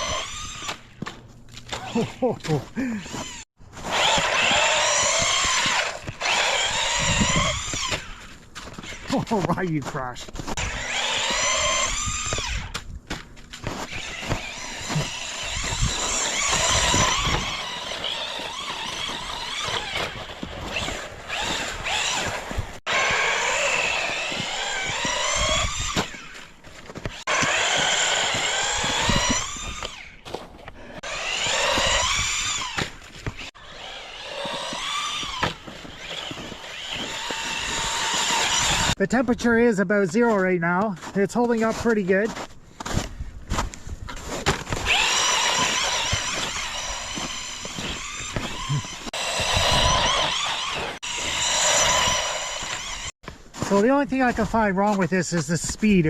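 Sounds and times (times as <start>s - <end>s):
rc truck motor whining: 0.0s - 0.9s, 2.8s - 9.1s, 10.5s - 12.8s, 13.7s - 30.2s, 31.0s - 39.0s, 44.7s - 53.2s.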